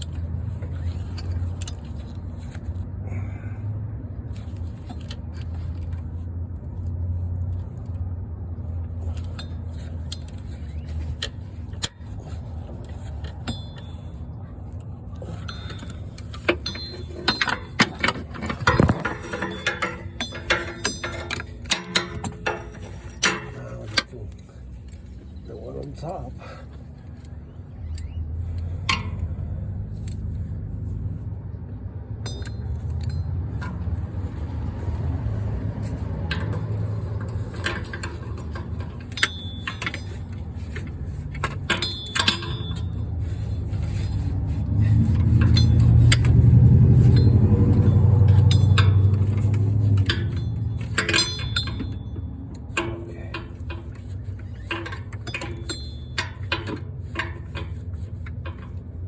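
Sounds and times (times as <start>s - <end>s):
metal hand tools clinking: 15.2s - 25.2s, 32.2s - 59.0s.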